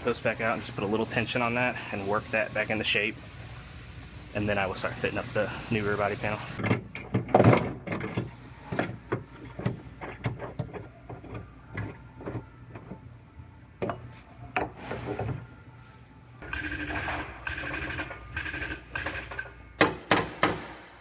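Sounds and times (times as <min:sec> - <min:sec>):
metal clanks and knocks: 0:06.6 - 0:13.0.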